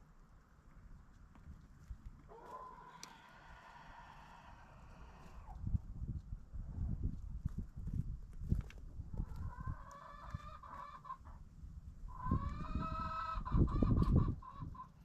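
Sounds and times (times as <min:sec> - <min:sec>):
chicken calling: 0:02.3 - 0:05.6, 0:09.3 - 0:11.4, 0:12.1 - 0:15.0.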